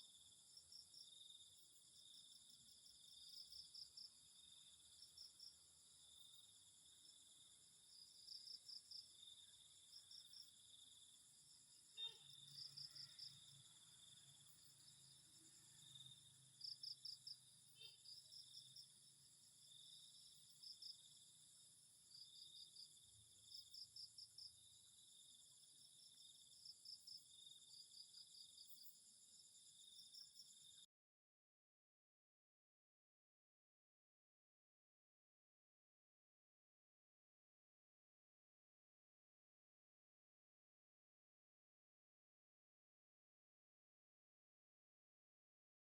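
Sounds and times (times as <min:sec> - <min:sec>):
crickets chirping: 0:00.0 - 0:30.9.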